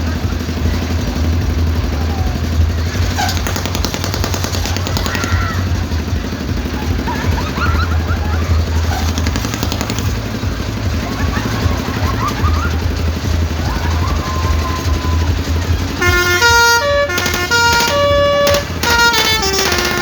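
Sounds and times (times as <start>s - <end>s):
ride machinery humming: 0.0s - 20.0s
riders screaming: 0.2s - 20.0s
horn playing a tune: 15.8s - 20.0s.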